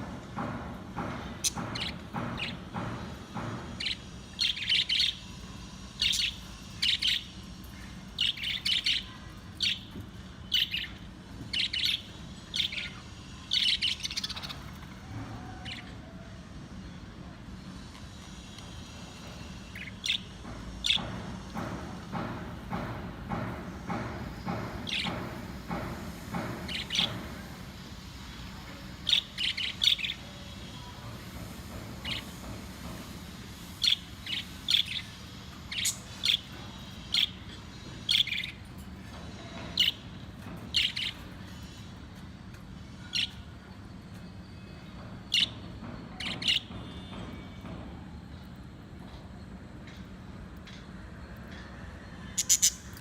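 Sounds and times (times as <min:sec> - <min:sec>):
budgerigars chirping: 0:52.4 - 0:52.9.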